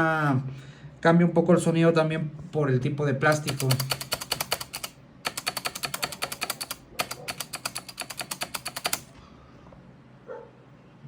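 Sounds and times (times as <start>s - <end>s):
mechanical keyboard keys clacking: 3.3s - 9.1s.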